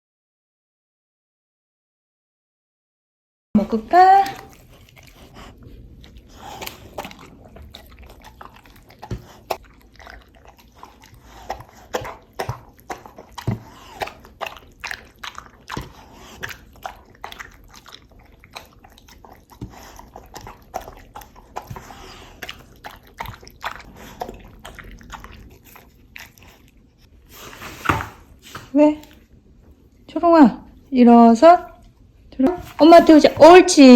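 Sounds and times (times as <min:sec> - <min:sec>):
dog crunching a treat: 0:04.2 - 0:27.1.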